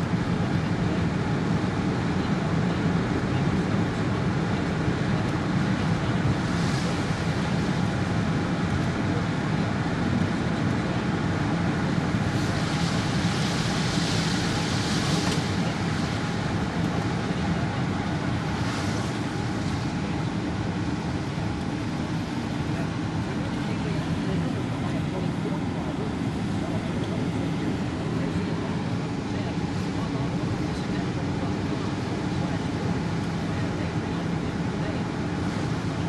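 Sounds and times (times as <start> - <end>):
car road and engine noise: 0.0 - 36.0
hiss of tyres: 12.3 - 16.2.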